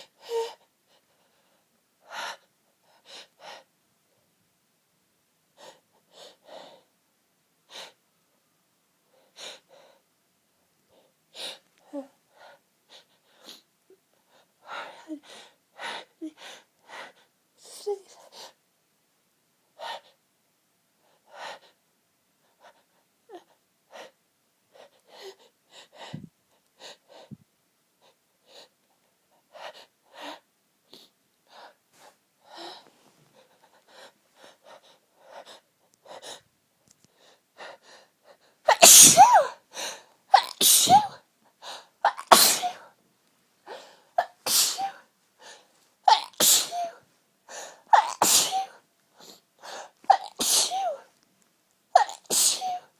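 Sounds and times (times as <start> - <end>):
loud sneezes: 38.7 - 39.6, 40.3 - 41.2, 42.0 - 42.9, 44.2 - 45.0, 46.1 - 47.0, 47.9 - 48.8, 50.1 - 51.0, 52.0 - 52.9.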